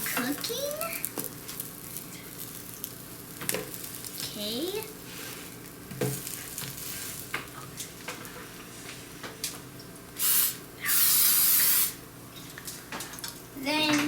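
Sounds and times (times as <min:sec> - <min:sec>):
eggplant frying sizzle: 0:00.0 - 0:13.8
loud bursts of hiss: 0:10.2 - 0:12.0.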